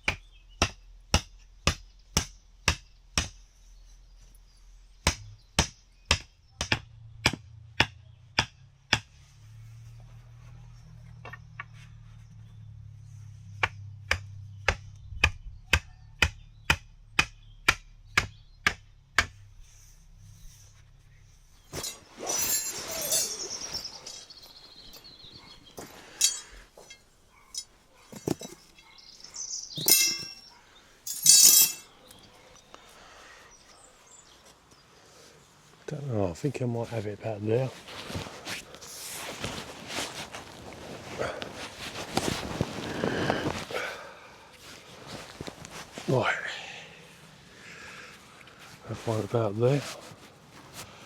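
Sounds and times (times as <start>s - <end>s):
mallet striking stakes: 0.0s - 3.4s, 5.1s - 9.2s, 29.8s - 30.4s
rustling: 19.4s - 29.0s, 33.9s - 46.4s, 47.1s - 51.0s
clattering handling noises: 21.7s - 28.9s, 29.8s - 30.5s, 31.1s - 32.3s.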